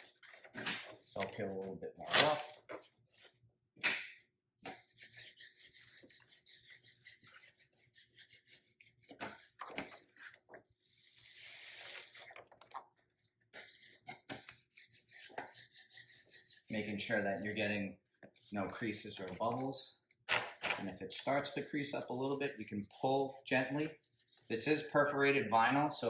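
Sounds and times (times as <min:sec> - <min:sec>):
decal scraping and rubbing on glass: 0:04.8 - 0:10.4, 0:13.6 - 0:17.7, 0:21.4 - 0:25.0.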